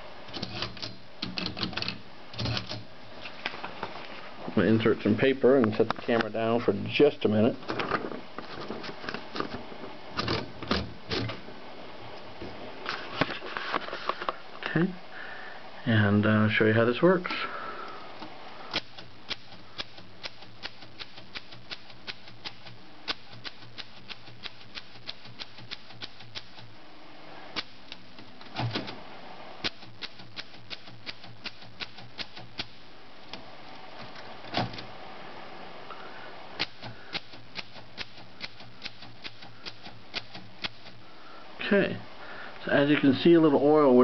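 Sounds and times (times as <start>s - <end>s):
manual typewriter typing: 0.3s - 2.9s, 10.2s - 11.4s, 18.7s - 26.7s, 29.6s - 32.8s, 36.6s - 41.0s
typewriter clunks: 0.3s - 2.9s.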